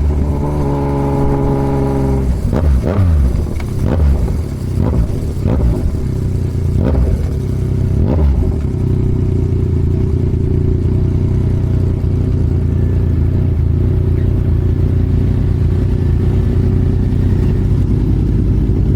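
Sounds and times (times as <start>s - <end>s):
motorcycle exhaust pops: 0.0s - 12.4s
motorcycle engine running steadily: 0.0s - 18.9s.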